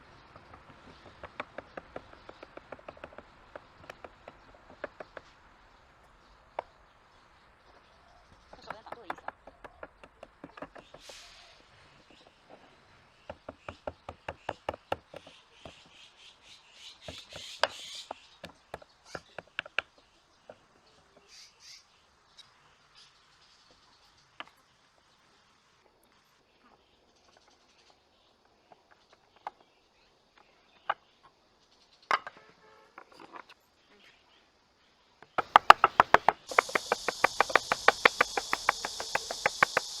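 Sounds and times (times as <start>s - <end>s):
wood scraping: 0.0s - 6.2s, 35.4s - 40.0s
wooden taps and knocks: 0.1s - 5.5s, 8.3s - 11.2s, 13.1s - 16.0s, 17.0s - 21.3s, 32.1s - 32.4s, 35.4s - 40.0s
steady high hiss: 35.4s - 40.0s.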